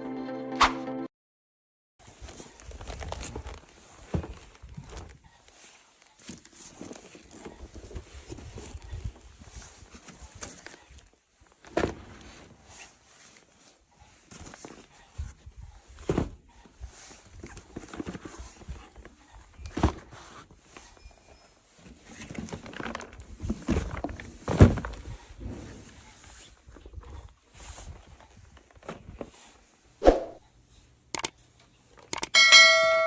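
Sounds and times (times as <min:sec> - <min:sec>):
packaging rustling: 0:02.0 - 0:09.1, 0:21.8 - 0:25.1.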